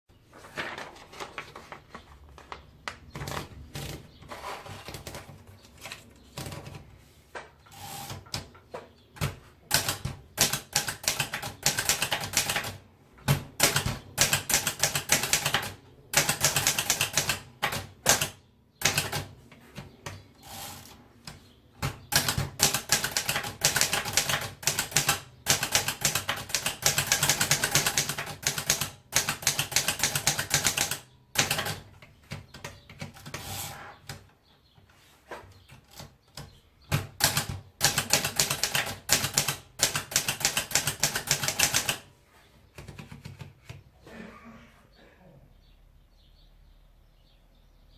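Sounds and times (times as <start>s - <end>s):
manual typewriter typing: 9.2s - 19.3s, 21.8s - 34.2s, 35.7s - 42.1s.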